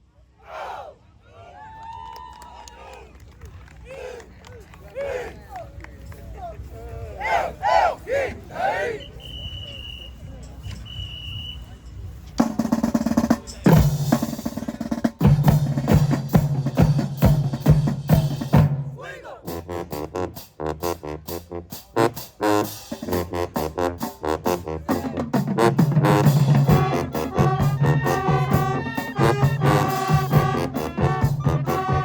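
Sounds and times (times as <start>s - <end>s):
marching band playing: 12.4s - 32.0s
sustained brass notes: 15.5s - 32.0s.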